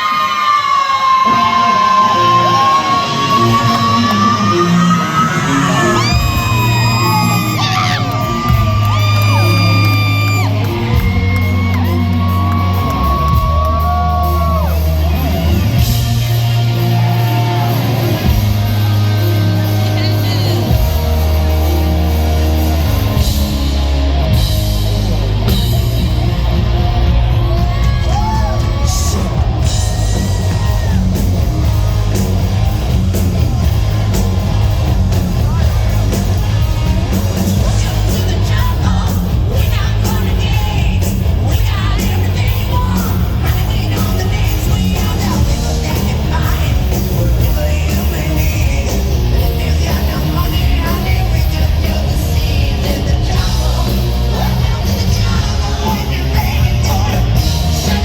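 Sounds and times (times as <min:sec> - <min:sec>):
screamed vocals: 0:00.0 - 0:15.0
drums: 0:00.0 - 0:58.0
electric guitar sliding in pitch: 0:01.3 - 0:15.7
bass notes: 0:02.2 - 0:58.0.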